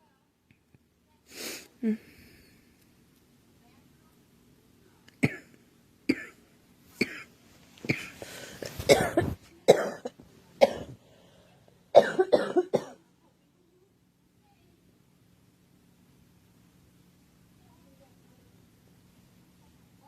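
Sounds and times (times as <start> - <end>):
girl coughing: 5.2 - 5.5, 6.1 - 6.4, 7.0 - 7.3, 7.9 - 8.2, 8.8 - 11.0, 11.9 - 13.0.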